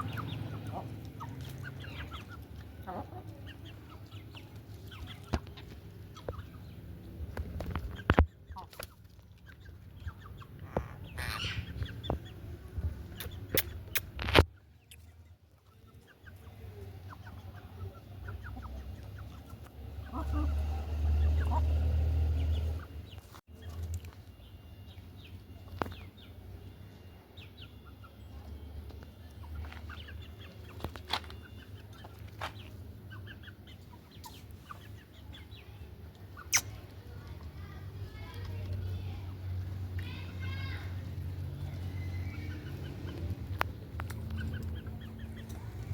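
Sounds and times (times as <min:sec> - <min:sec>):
parrot chirping and squawking: 0:10.5 - 0:11.9.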